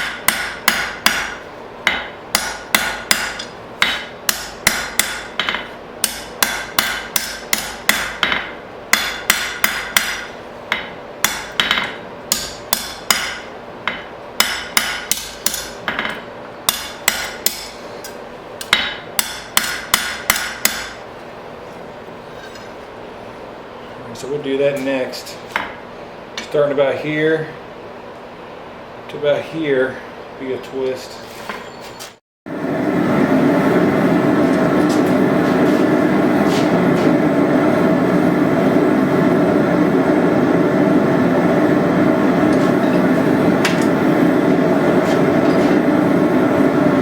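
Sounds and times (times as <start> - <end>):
hammer striking steel on anvil: 0.0 - 21.0.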